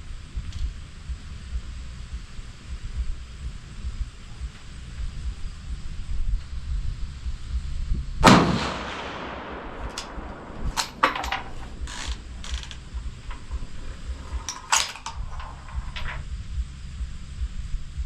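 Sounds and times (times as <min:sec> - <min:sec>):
wind rumbling on microphone: 0:00.0 - 0:18.0
rifle shot: 0:08.2 - 0:12.5
short sharp clicks and clacks: 0:09.8 - 0:13.4.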